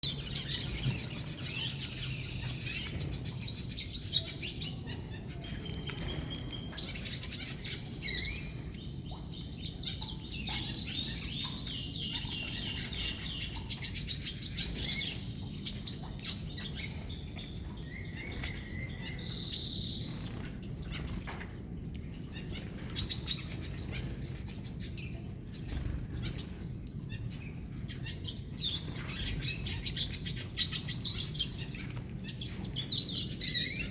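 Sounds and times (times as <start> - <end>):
finches chirping: 27.4 - 33.9.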